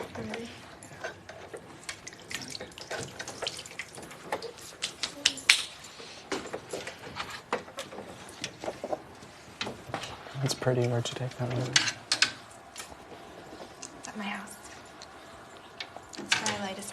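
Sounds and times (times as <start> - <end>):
water running in a sink: 1.8 - 5.3
water drips and plinks: 1.8 - 5.7.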